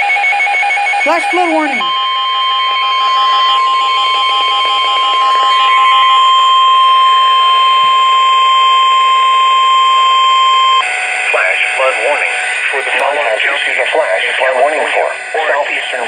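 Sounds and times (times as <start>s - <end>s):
fast-pulsing beep: 0.8s - 11.0s
steady alert tone: 1.1s - 7.2s.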